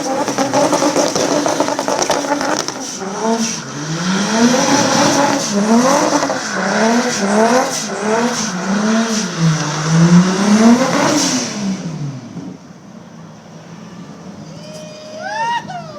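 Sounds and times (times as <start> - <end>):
car engine revving hard: 0.0 - 12.6.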